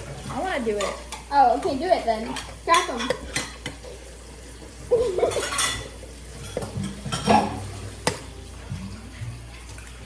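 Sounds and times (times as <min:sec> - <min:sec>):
bowl and utensils clinking: 0:00.2 - 0:04.1, 0:04.9 - 0:08.8.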